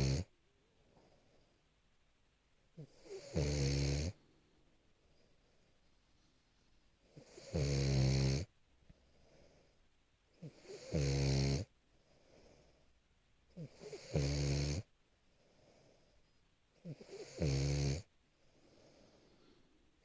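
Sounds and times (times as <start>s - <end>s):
dog snoring: 0.0s - 0.3s, 2.8s - 4.2s, 7.0s - 8.5s, 10.4s - 11.7s, 13.5s - 14.9s, 16.8s - 18.1s.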